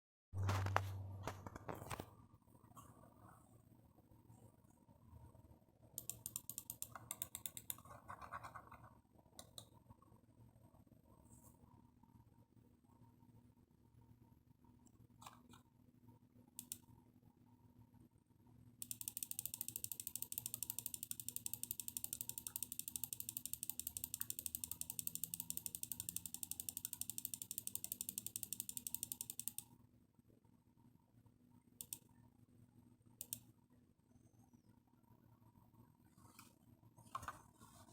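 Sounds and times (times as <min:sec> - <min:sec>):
scroll wheel ticking: 0:06.0 - 0:07.9, 0:18.8 - 0:29.7, 0:33.2 - 0:33.4.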